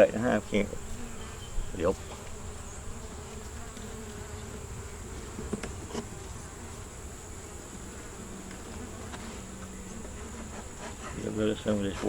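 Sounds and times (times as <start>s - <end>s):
honeybees buzzing: 0.0s - 12.0s
light knocks of hive frame: 2.0s - 6.8s, 7.6s - 12.0s.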